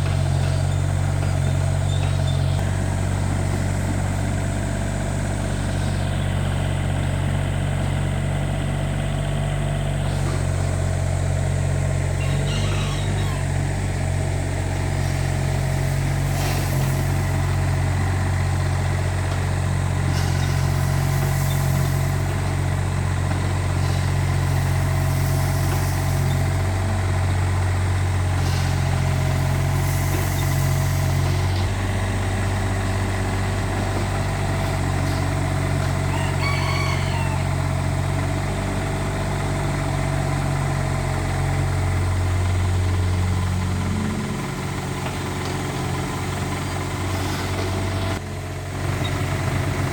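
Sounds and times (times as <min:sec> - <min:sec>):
diesel engine running: 0:00.0 - 0:49.9
rooster crowing: 0:12.1 - 0:13.8, 0:35.3 - 0:38.0.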